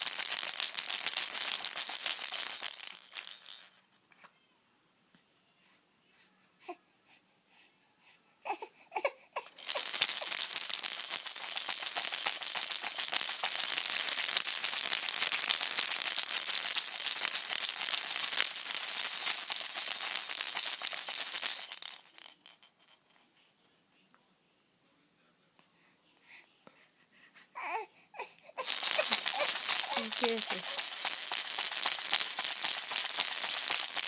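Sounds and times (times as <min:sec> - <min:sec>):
baby rattle shaken: 0:00.0 - 0:03.8, 0:09.4 - 0:23.2, 0:28.6 - 0:34.0
baby whimpering: 0:08.4 - 0:09.6, 0:27.4 - 0:29.5.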